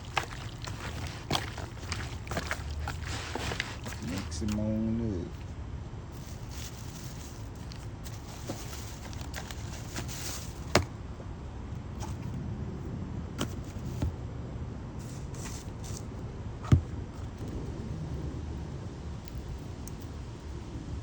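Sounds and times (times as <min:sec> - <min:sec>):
chicken pieces handled by hand: 0:00.0 - 0:10.9
steady low rumble: 0:00.0 - 0:21.0.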